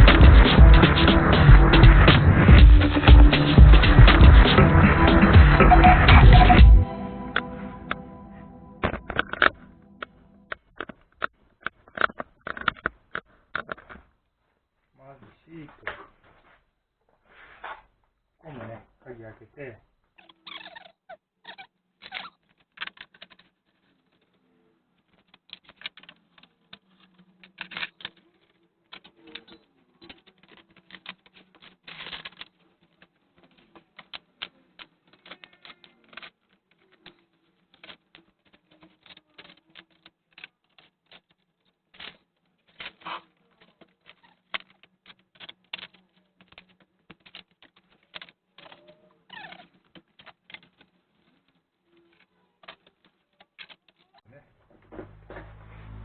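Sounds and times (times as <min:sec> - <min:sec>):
parts clicking and clattering: 0:08.8 - 0:14.2, 0:22.0 - 0:56.0.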